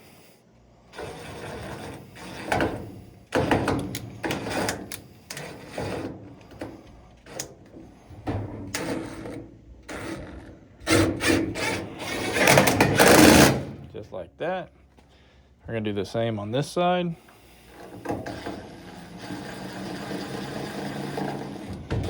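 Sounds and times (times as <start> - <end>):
power drill driving screws: 8.7 - 13.8, 17.7 - 22.0.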